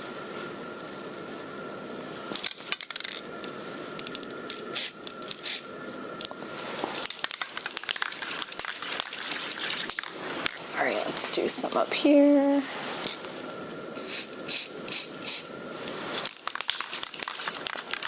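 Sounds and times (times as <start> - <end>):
spray paint can hissing: 4.7 - 5.6, 14.0 - 15.5, 16.4 - 18.0
clicks and rattles of handling: 15.8 - 18.0.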